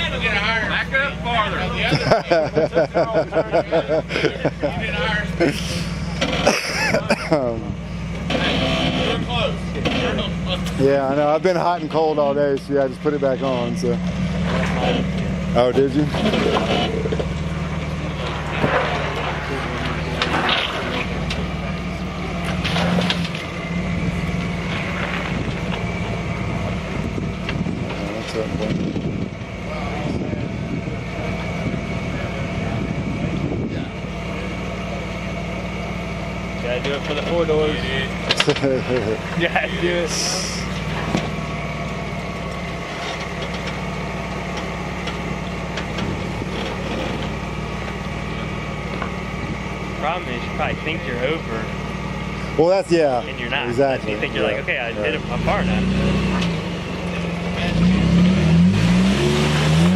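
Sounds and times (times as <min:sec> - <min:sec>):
engine running steadily: 0:00.0 - 0:59.9
sharp knocks and scrapes: 0:05.6 - 0:06.8, 0:08.0 - 0:10.8, 0:14.1 - 0:21.7, 0:22.4 - 0:26.3, 0:42.4 - 0:48.3.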